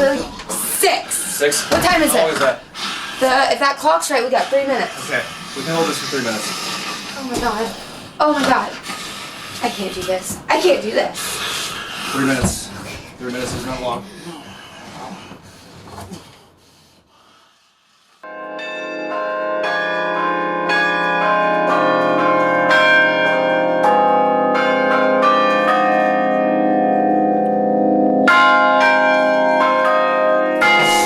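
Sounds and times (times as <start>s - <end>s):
church bells pealing: 18.2s - 31.0s.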